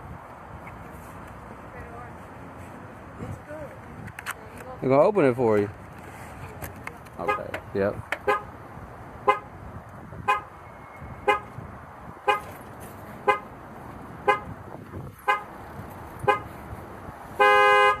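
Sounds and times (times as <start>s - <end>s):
held car horn tone: 8.2s - 8.5s, 9.2s - 9.5s, 10.2s - 11.6s, 12.2s - 12.6s, 13.2s - 13.5s, 14.2s - 15.5s, 16.2s - 16.6s, 17.3s - 18.0s
car alarm horn honks: 9.3s - 9.5s, 10.3s - 11.5s, 13.2s - 13.5s, 14.2s - 14.6s, 15.2s - 15.5s, 16.2s - 16.5s, 17.4s - 18.0s.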